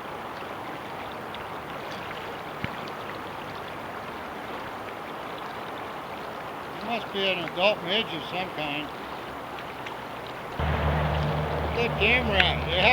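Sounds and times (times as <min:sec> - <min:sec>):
river water flowing: 0:10.6 - 0:12.9.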